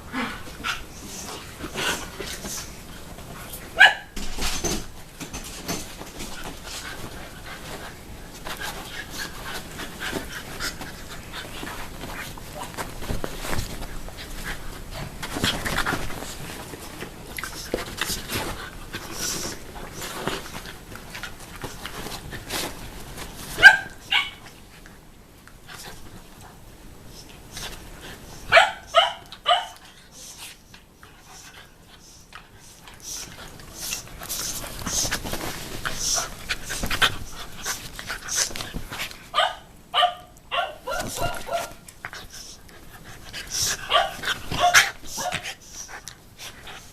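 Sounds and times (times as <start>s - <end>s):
dogs scuffling: 0.4s - 25.0s, 25.6s - 46.9s
dog barking high: 3.8s - 4.2s, 28.5s - 29.8s, 39.4s - 41.8s, 43.9s - 45.4s.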